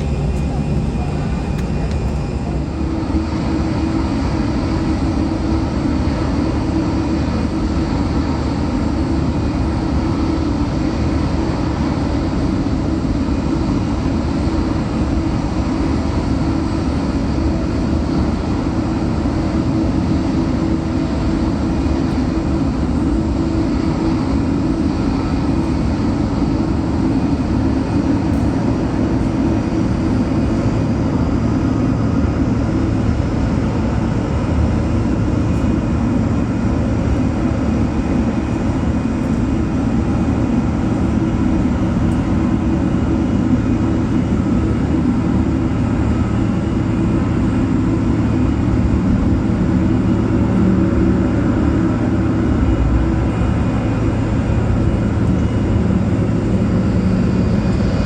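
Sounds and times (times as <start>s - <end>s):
jet airliner engines rumbling: 0.0s - 58.0s.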